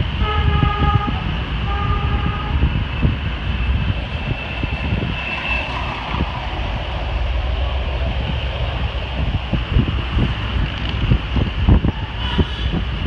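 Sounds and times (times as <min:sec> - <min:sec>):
car engine and road rumble: 0:00.0 - 0:13.0
low wind buffeting thumps: 0:00.0 - 0:13.0.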